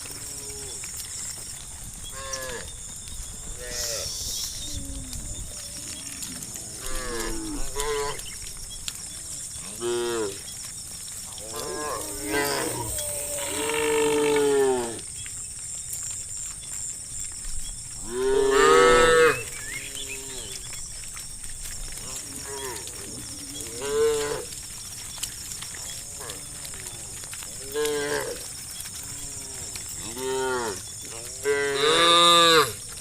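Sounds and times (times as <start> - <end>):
cows mooing: 3.5 - 8.4, 9.1 - 10.5, 11.3 - 15.1, 18.0 - 20.8, 22.0 - 24.7, 25.7 - 32.8.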